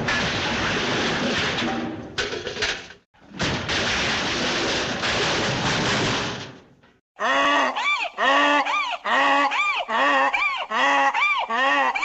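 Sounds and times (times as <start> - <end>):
cartoon donkey braying: 7.2 - 12.0.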